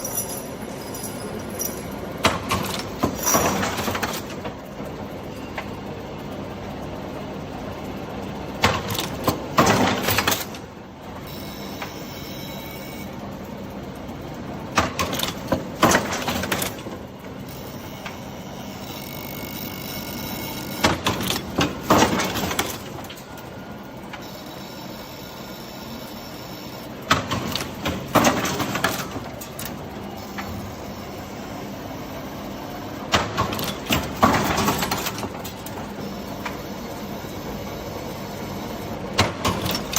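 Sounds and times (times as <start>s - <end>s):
steady machine hum: 0.0s - 9.6s.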